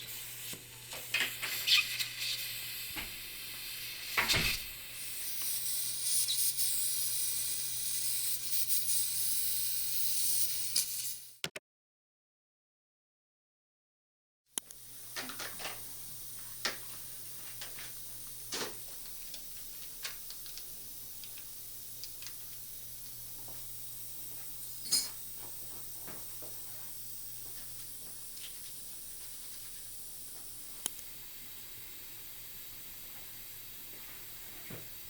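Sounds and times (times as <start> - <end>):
steady hiss: 0.0 - 11.4, 14.6 - 35.0
metal dental instruments clicking: 19.1 - 22.4, 24.8 - 25.2.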